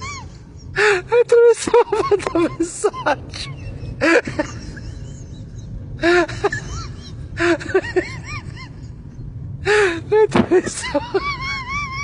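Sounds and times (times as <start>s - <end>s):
steady low hum: 0.0s - 12.0s
person laughing: 1.6s - 9.0s, 10.6s - 12.0s.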